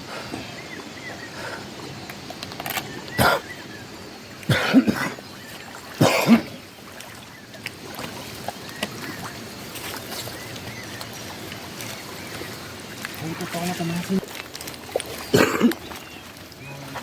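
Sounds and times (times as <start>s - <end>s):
river water rushing: 3.2s - 17.0s
harsh cough-like bursts: 6.0s - 6.5s, 15.3s - 15.7s.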